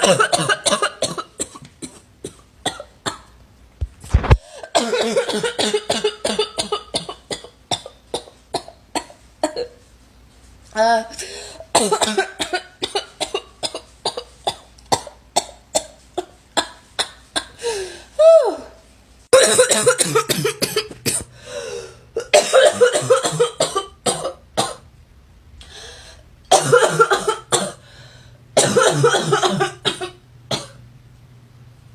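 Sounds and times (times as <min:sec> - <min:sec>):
girl's barking cough: 0:00.0 - 0:03.3, 0:04.6 - 0:09.8, 0:11.7 - 0:17.6, 0:19.3 - 0:21.3, 0:22.2 - 0:24.8, 0:26.5 - 0:27.8, 0:28.6 - 0:30.8.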